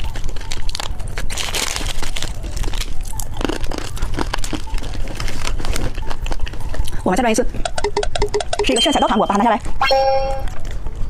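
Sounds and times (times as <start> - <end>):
plastic wrapper crinkling: 0.0 - 6.9.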